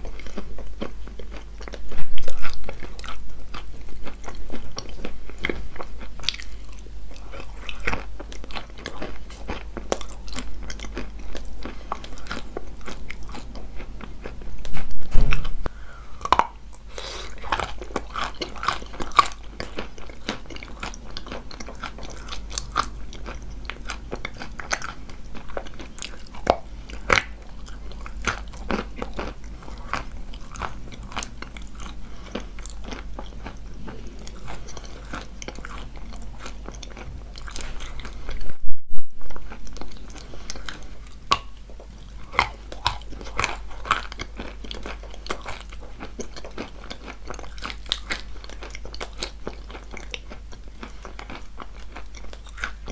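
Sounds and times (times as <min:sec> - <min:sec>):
chewing crunchy chalk: 0:16.2 - 0:38.5, 0:39.4 - 0:52.9.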